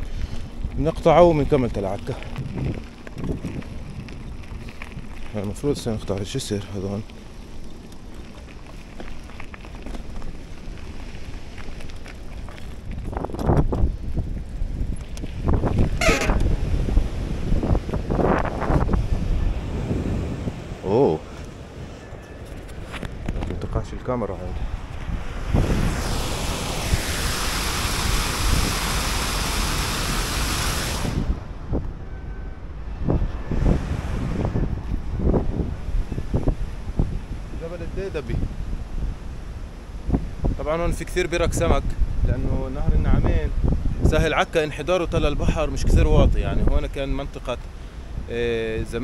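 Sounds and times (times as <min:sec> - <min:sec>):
bicycle riding rumble: 0:00.0 - 0:49.0
wind buffeting microphone: 0:00.0 - 0:49.0
bicycle clicks and rattles: 0:02.0 - 0:06.3, 0:07.0 - 0:16.5.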